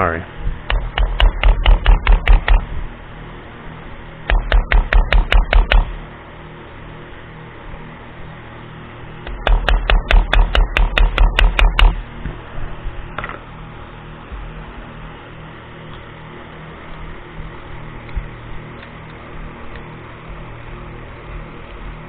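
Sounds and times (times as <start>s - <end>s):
hammer tapping metal punch: 0.7s - 2.6s.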